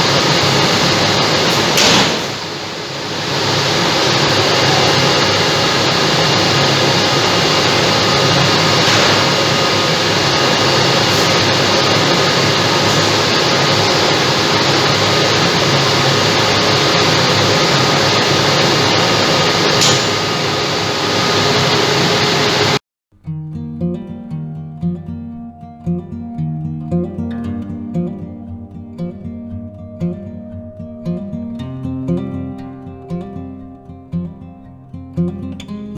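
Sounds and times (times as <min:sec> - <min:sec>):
acoustic guitar music: 0:00.0 - 0:02.7, 0:03.4 - 0:20.5, 0:23.1 - 0:35.9
dump truck engine running: 0:00.0 - 0:22.8.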